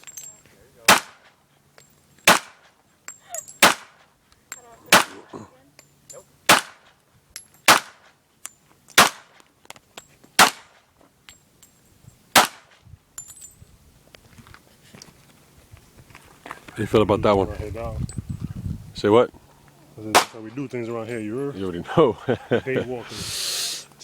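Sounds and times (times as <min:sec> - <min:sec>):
gunshots: 0:00.9 - 0:01.3, 0:02.3 - 0:02.7, 0:03.6 - 0:04.0, 0:04.9 - 0:05.3, 0:06.5 - 0:06.9, 0:07.7 - 0:08.1, 0:09.0 - 0:09.4, 0:10.4 - 0:10.8, 0:12.4 - 0:12.7, 0:20.1 - 0:20.6.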